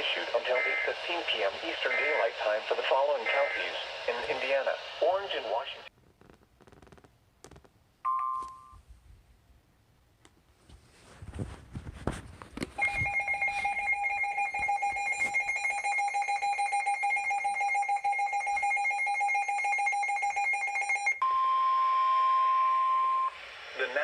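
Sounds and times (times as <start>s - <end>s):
crackles: 0.0s - 7.8s.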